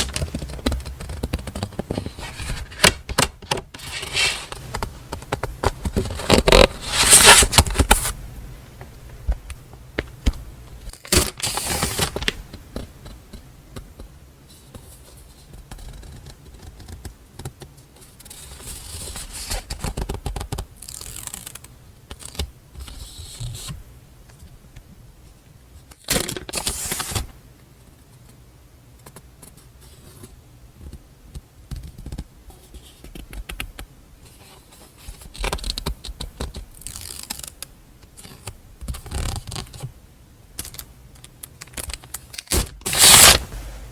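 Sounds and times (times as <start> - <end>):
paper rustling and crinkling: 0.0 - 8.1, 10.9 - 12.4, 26.1 - 27.3, 41.6 - 43.9
paper sheets sliding and tapping: 0.0 - 8.1, 42.5 - 43.9.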